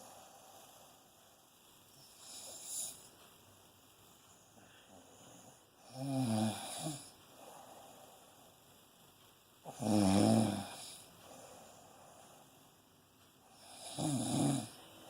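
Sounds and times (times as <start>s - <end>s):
soft breath: 4.1s - 5.8s, 7.0s - 9.0s, 10.9s - 13.6s
loud low snore: 9.7s - 11.0s, 13.7s - 14.8s.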